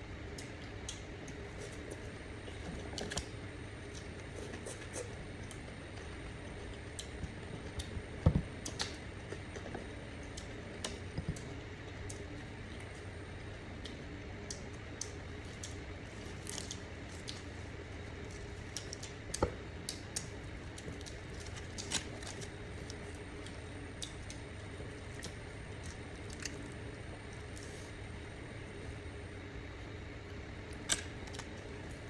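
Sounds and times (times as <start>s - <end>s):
steady low hum: 0.0s - 32.0s
squishy food sounds: 13.8s - 32.0s.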